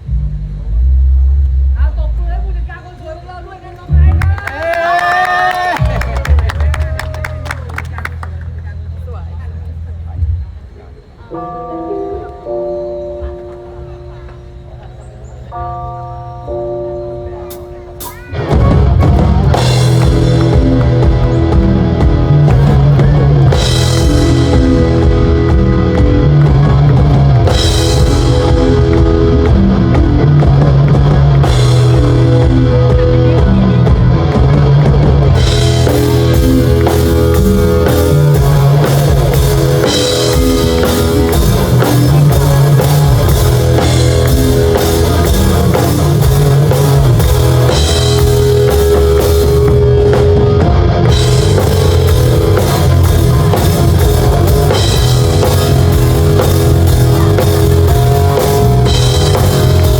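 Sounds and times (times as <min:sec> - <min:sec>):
drum kit: 0:17.5 - 0:59.9
live rock band playing loudly: 0:17.5 - 0:59.9.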